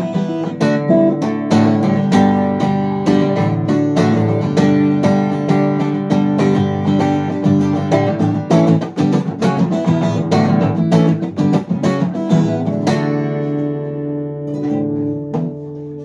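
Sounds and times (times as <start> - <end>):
acoustic guitar strumming chords: 0.0 - 16.0.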